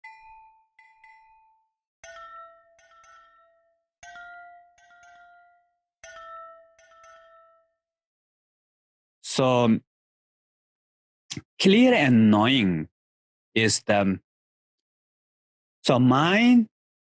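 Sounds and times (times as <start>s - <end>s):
bell-like mallet percussion: 0.0s - 7.9s.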